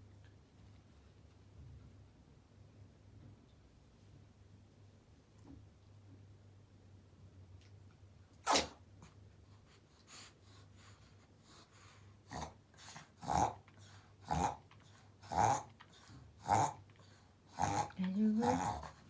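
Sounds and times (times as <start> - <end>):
dog reverse sneezing: 8.4 - 8.8.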